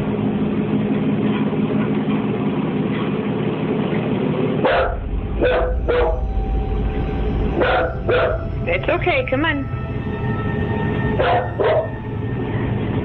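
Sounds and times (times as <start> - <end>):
steady low hum: 0.0 - 13.0
dog barking: 4.6 - 6.2, 7.6 - 8.5, 11.2 - 12.0.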